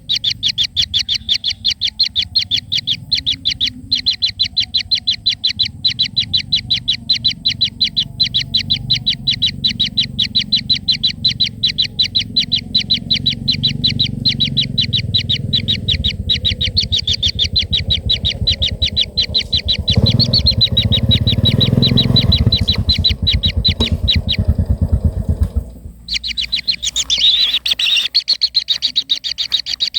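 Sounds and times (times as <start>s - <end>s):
rapid high chirps: 0.0s - 29.9s
low rumble: 5.8s - 27.5s.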